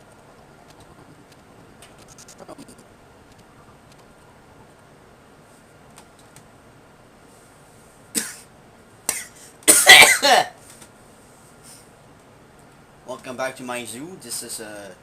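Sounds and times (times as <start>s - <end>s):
person coughing: 8.2s - 8.5s, 9.1s - 10.6s.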